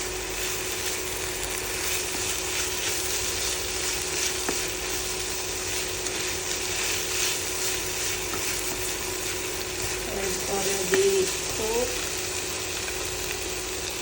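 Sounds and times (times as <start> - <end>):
food sizzling in a pan: 0.0 - 14.0
spatula scraping a pan: 1.6 - 10.4.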